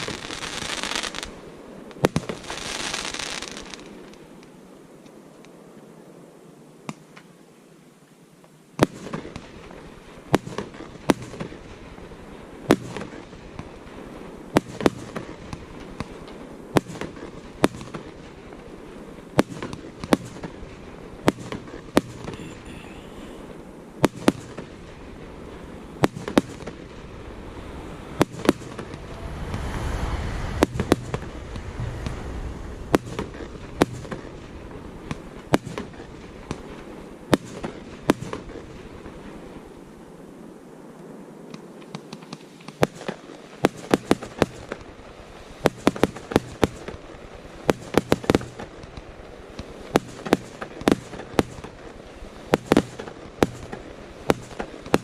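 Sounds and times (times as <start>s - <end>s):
fireworks bangs: 0.0s - 1.4s, 8.8s - 39.8s, 42.0s - 55.0s
low rumbling noise: 24.8s - 37.2s.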